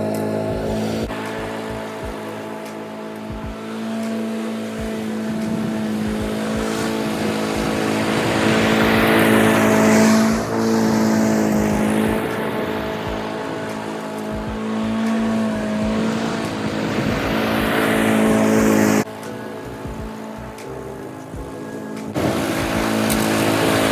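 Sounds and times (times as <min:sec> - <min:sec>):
lawn mower engine running: 0:00.0 - 0:23.9.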